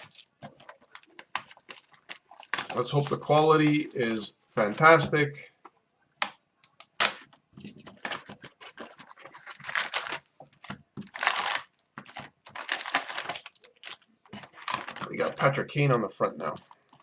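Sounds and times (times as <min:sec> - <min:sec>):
shrink-wrap and cardboard tearing: 0:00.0 - 0:04.7, 0:06.8 - 0:10.3, 0:11.0 - 0:15.4.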